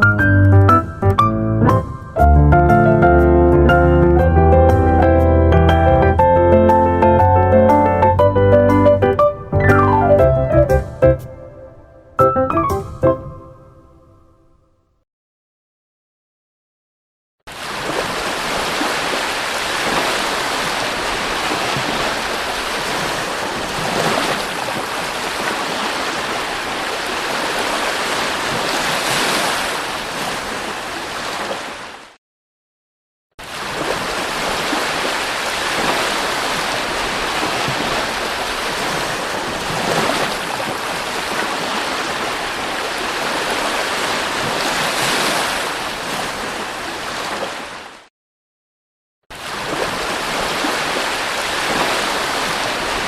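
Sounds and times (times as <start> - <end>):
ocean surf washing: 5.0 - 14.4, 17.5 - 32.2, 33.4 - 48.1, 49.3 - 53.0.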